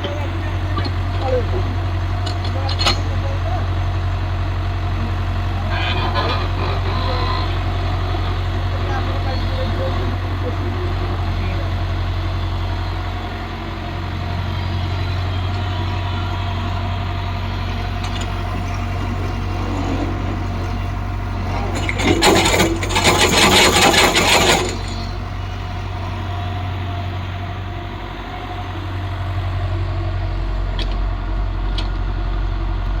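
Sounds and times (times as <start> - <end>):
machinery clattering: 0.0 - 3.8, 17.5 - 27.6
diesel engine humming: 0.0 - 33.0.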